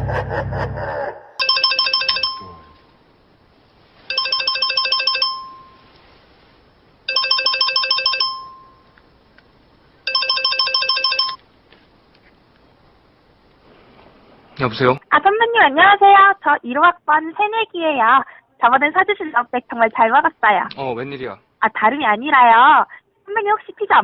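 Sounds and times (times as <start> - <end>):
telephone electronic trilling ring: 1.4 - 2.8, 4.1 - 5.8, 7.1 - 8.8, 10.1 - 11.4.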